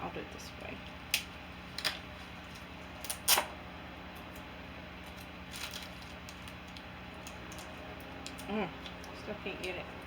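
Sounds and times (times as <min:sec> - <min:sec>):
packaging crackling and snapping: 0:01.1 - 0:03.5, 0:05.0 - 0:09.8.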